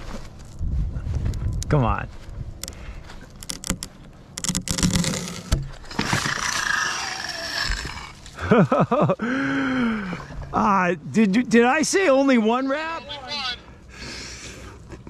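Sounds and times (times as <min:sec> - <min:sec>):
tree wood cracking and snapping: 0:02.6 - 0:08.4
rushing rattling of falling wood: 0:04.7 - 0:08.4
person shouting: 0:12.6 - 0:13.6.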